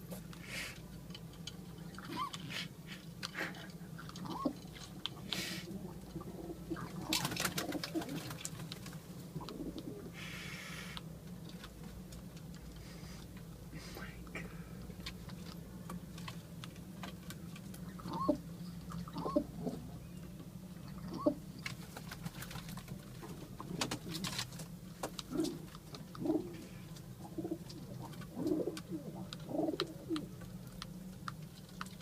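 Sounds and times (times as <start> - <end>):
steady low hum: 0.0 - 32.0
pigeons cooing: 1.8 - 8.5, 9.2 - 11.0, 17.8 - 20.1, 20.8 - 22.3, 23.2 - 30.5.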